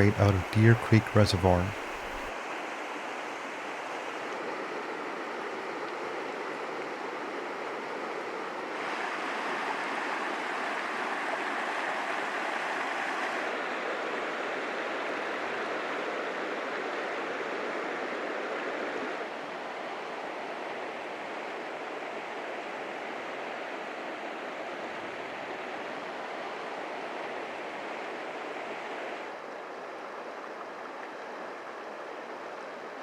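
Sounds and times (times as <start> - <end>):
river water rushing: 0.0 - 2.3.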